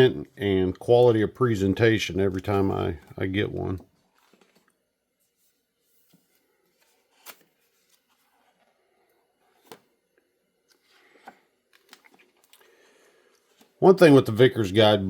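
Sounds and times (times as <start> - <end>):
paper rustling: 2.2 - 8.9
book pages turning: 2.2 - 12.8, 13.4 - 13.8.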